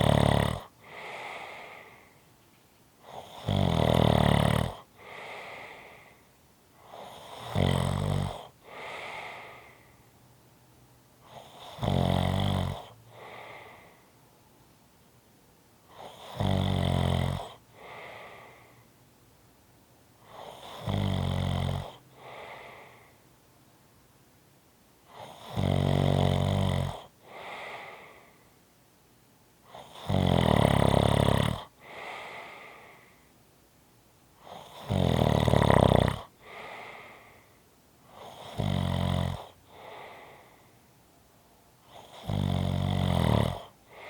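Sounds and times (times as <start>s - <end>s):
person snoring: 0.0s - 2.2s, 3.0s - 6.2s, 6.8s - 10.0s, 11.2s - 14.0s, 15.9s - 18.8s, 20.2s - 23.1s, 25.1s - 28.5s, 29.7s - 33.2s, 34.4s - 37.5s, 38.1s - 40.7s, 41.8s - 44.0s
soft breathy breath: 0.7s - 3.4s, 4.8s - 7.5s, 8.5s - 10.3s, 12.8s - 14.3s, 17.6s - 19.0s, 22.0s - 23.4s, 27.0s - 28.7s, 31.6s - 33.4s, 36.2s - 38.6s, 39.4s - 42.3s, 43.6s - 44.0s.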